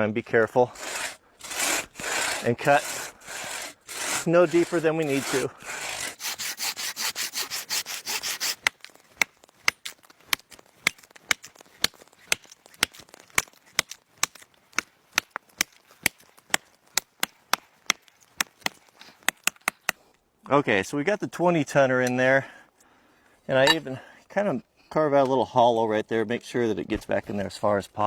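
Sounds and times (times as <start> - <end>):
hand saw cutting wood: 0.4 - 14.4.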